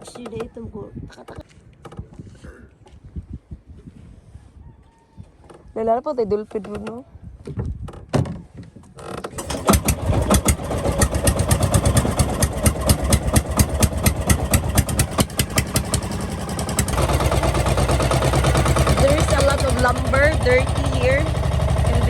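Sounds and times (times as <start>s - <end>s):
small boat engine putter: 7.8s - 22.0s.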